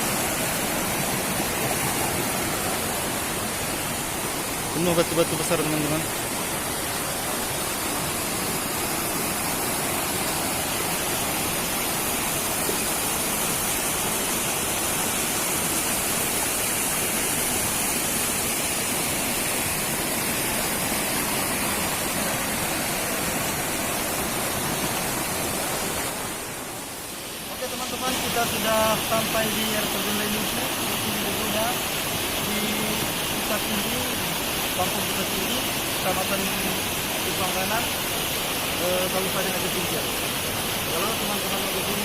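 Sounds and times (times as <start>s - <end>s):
waterfall rushing: 0.0s - 42.0s.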